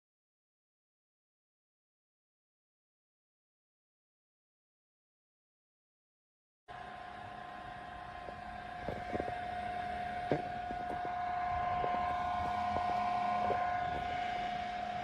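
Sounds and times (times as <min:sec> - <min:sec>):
desk fan motor whine: 0:06.7 - 0:15.0.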